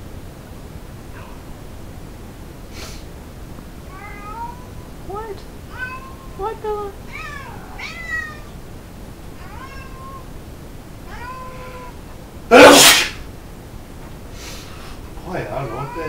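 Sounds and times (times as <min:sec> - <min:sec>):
cat meowing: 0:03.9 - 0:04.9, 0:05.7 - 0:08.6, 0:09.4 - 0:10.3, 0:11.1 - 0:13.2, 0:15.4 - 0:16.0
cat sneezing: 0:12.5 - 0:13.2.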